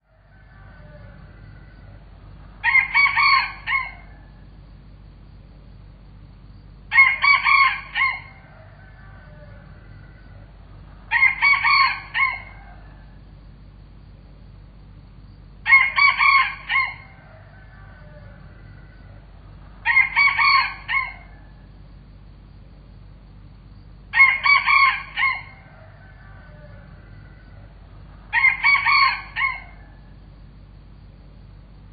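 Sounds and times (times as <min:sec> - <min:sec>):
rooster crowing: 0:00.0 - 0:04.6, 0:06.9 - 0:13.4, 0:15.6 - 0:21.9, 0:24.1 - 0:30.4.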